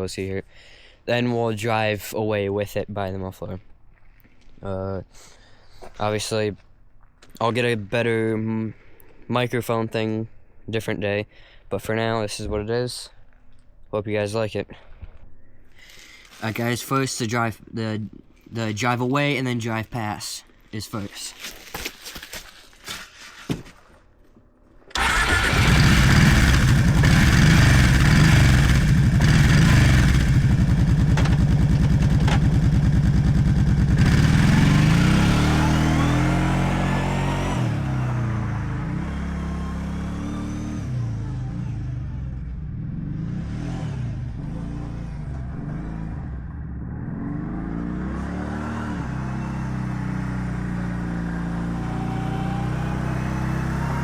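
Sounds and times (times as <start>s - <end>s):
atv engine running: 24.9s - 54.0s.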